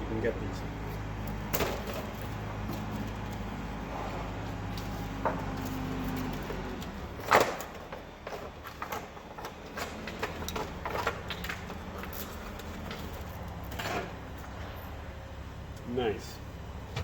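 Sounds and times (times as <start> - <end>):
metal parts clicking and knocking: 7.2 - 14.0.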